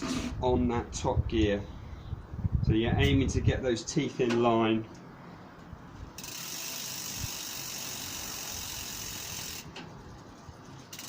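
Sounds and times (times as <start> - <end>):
bicycle chain running over gears: 6.2 - 9.7
freewheel hub ratcheting: 6.2 - 9.7.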